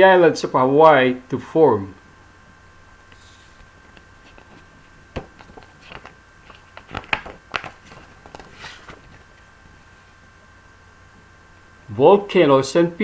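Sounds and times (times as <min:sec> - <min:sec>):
book pages rustling: 0:03.1 - 0:09.9.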